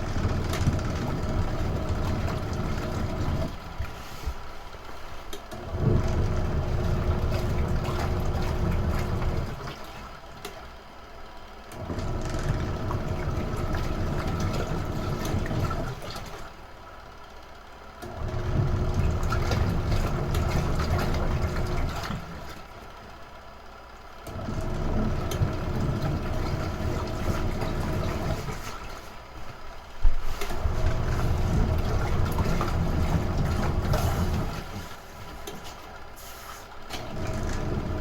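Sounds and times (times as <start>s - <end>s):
water churning: 0.0s - 10.2s, 12.4s - 16.6s, 18.4s - 22.7s, 24.6s - 29.4s, 30.4s - 35.8s
washing machine motor: 0.0s - 38.0s.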